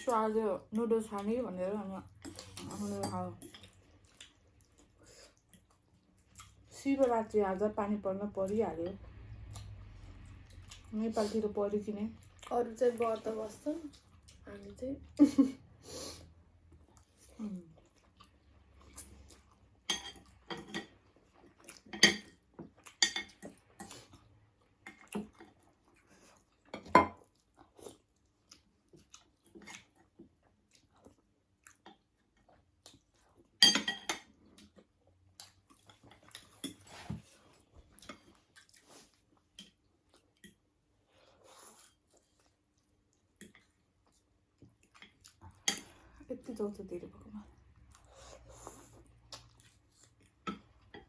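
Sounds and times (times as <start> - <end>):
chewing and biting food: 16.7 - 33.6, 34.4 - 40.7, 47.6 - 50.9.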